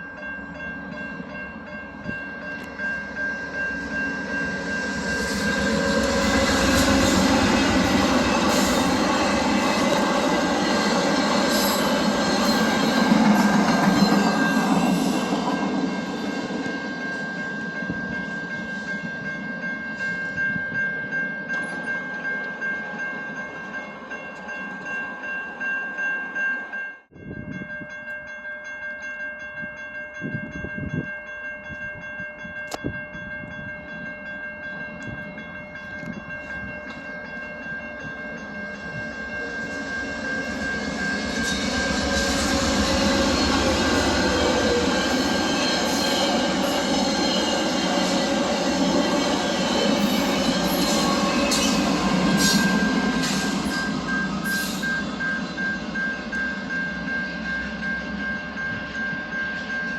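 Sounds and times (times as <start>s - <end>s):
train rolling on rails: 0.0s - 59.9s
high-pitched squeal: 3.0s - 17.0s, 38.7s - 56.0s.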